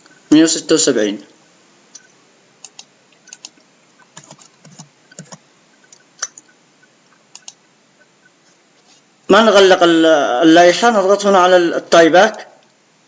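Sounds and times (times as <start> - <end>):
keyboard and mouse clicks: 2.0 - 6.5, 7.3 - 7.6.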